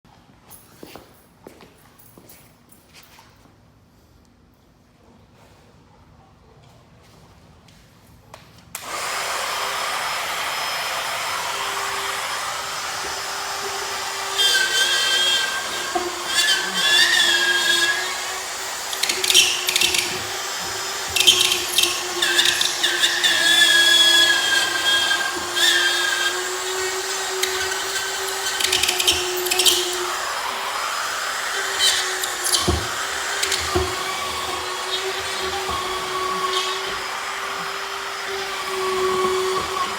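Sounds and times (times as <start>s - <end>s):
power tool cutting drywall: 8.8s - 39.9s.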